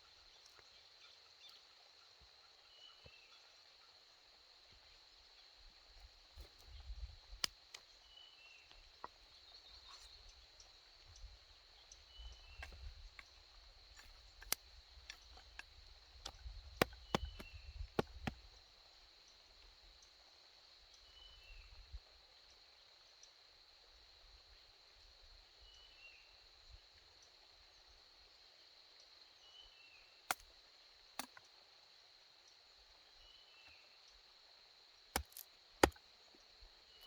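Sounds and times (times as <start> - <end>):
sharp clicks and knocks: 35.2 - 36.0.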